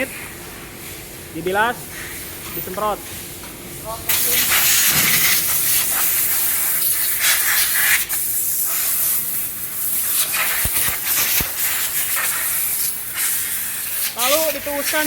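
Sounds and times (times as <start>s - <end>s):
water spray jets hissing: 4.0s - 15.0s.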